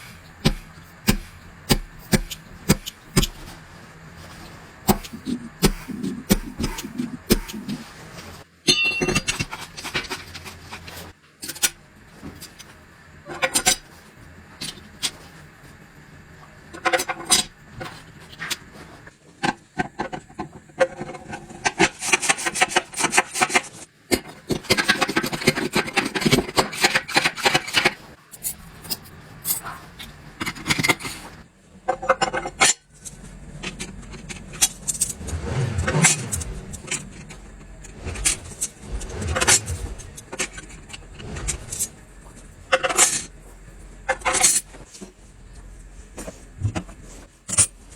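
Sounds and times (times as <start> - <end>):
metal scraping: 0.0 - 9.1, 33.0 - 47.9
metal tools clinking and knocking: 8.7 - 9.4.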